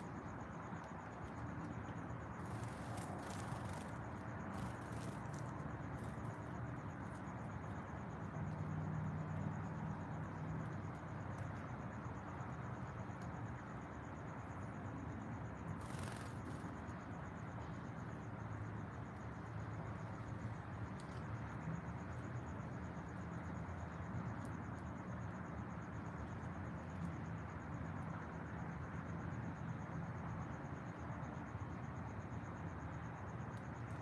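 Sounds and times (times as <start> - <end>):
insect trilling: 2.4 - 7.2, 15.8 - 16.8.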